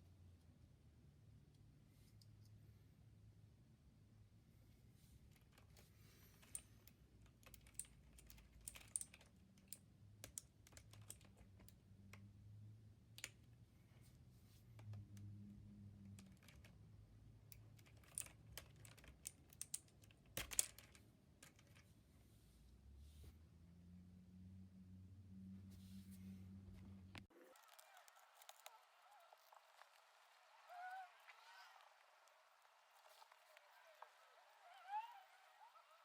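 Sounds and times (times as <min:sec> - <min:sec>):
mechanical keyboard clicking: 0:07.4 - 0:11.8.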